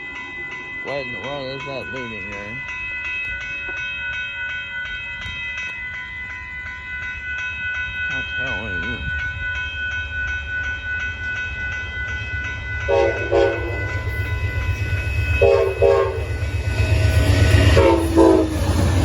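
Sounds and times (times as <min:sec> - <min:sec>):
crossing bell ringing: 0:00.0 - 0:19.0
train rumble: 0:05.9 - 0:19.0
locomotive horn blasts: 0:12.9 - 0:13.9, 0:15.4 - 0:16.4, 0:17.6 - 0:18.6.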